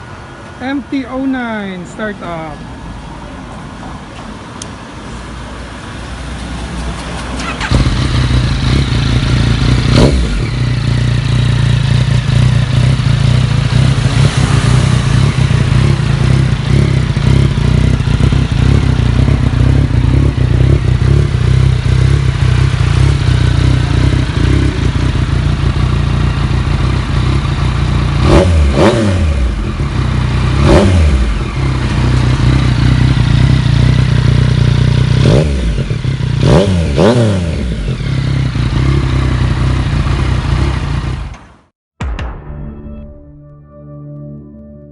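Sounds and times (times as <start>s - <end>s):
motorcycle engine starting: 6.6s - 41.6s
motorcycle engine idling: 6.8s - 28.3s, 29.5s - 36.4s, 37.7s - 41.5s
motorcycle engine revving: 6.8s - 41.7s.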